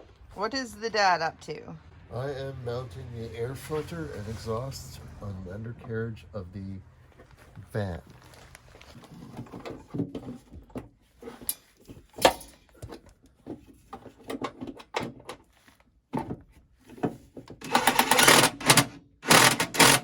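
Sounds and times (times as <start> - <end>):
tools clicking and knocking: 16.2 - 20.0
loud fast rattling: 17.7 - 20.0.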